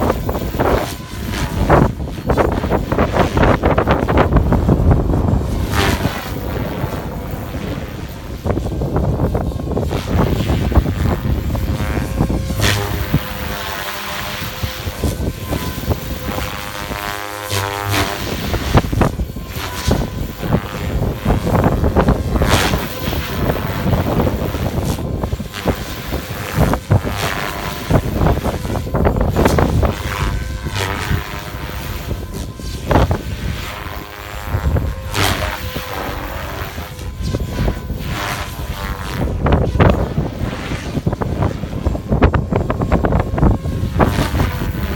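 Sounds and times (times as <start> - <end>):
rc helicopter rotor whine: 0.0 - 44.9
wind buffeting microphone: 0.0 - 44.9.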